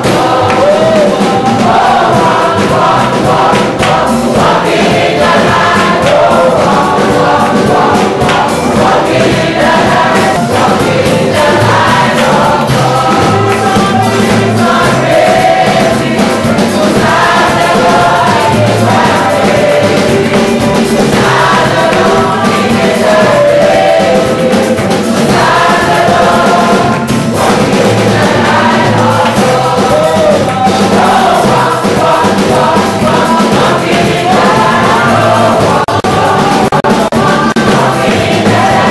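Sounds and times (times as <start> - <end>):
gospel choir singing over a beat: 0.0 - 38.9.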